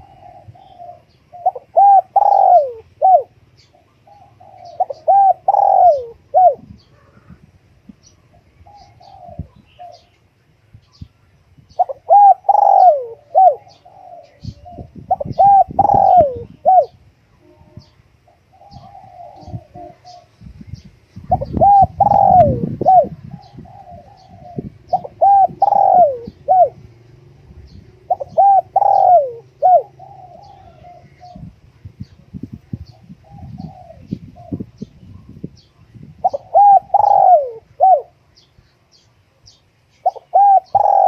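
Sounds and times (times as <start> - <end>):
dove cooing: 0.0 - 7.4, 8.3 - 10.2, 11.7 - 20.4, 21.2 - 35.4, 36.2 - 38.2, 40.0 - 41.0.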